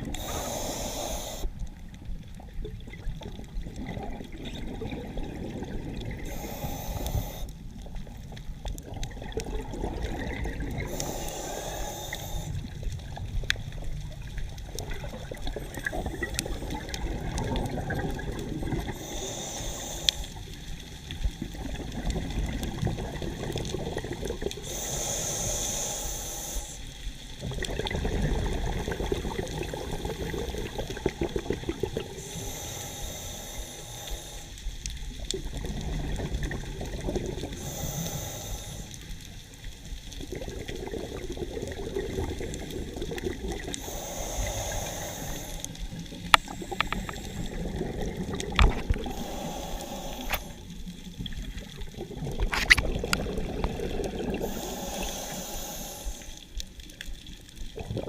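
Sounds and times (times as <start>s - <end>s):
exhaled air bubbling: 0.0s - 58.0s
regulator inhalation hiss: 0.1s - 1.6s, 6.2s - 7.6s, 10.8s - 12.7s, 18.9s - 20.8s, 24.6s - 27.0s, 32.2s - 34.8s, 37.5s - 39.2s, 43.8s - 47.7s, 48.9s - 50.9s, 54.4s - 56.6s.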